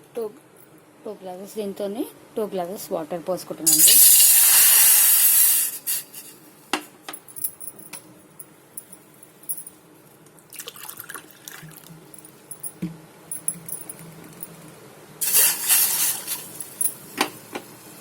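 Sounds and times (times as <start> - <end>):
water pouring into a pot: 10.6 - 11.9
sharp clinks: 12.1 - 14.5.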